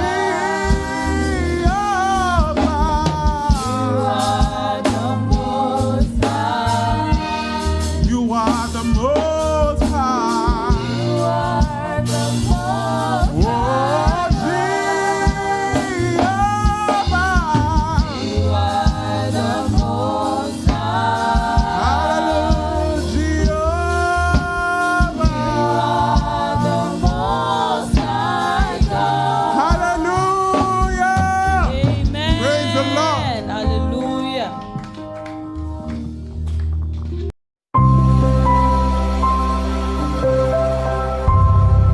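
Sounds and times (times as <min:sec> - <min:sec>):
drum strikes: 0:00.0 - 0:33.5
choir singing: 0:00.0 - 0:33.8
bass: 0:00.0 - 0:41.9.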